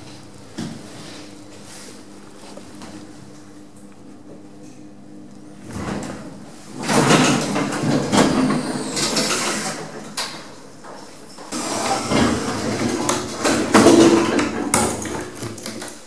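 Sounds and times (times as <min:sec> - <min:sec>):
lift doors sliding with rattle: 0:05.6 - 0:15.3.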